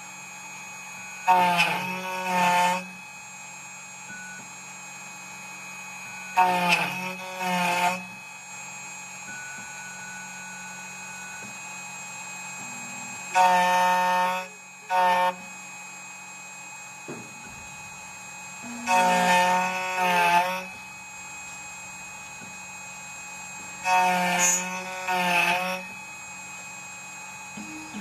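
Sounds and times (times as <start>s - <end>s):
steady low hum: 3.0s - 25.2s, 25.9s - 28.0s
electronic buzzer blasts: 4.0s - 8.6s, 9.6s - 15.6s, 17.3s - 21.0s, 23.8s - 26.2s, 27.3s - 28.0s.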